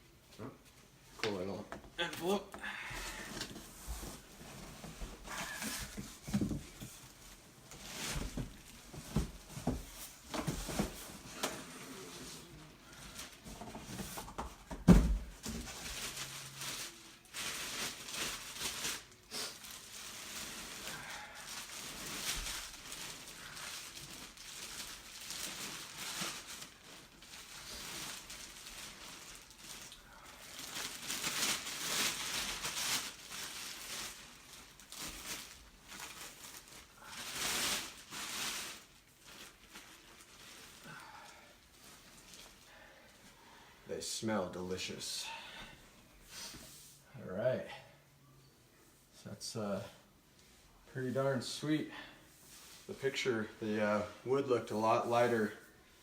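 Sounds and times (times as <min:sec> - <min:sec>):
packing material rustling and tearing: 0:03.1 - 0:14.4, 0:15.3 - 0:42.9.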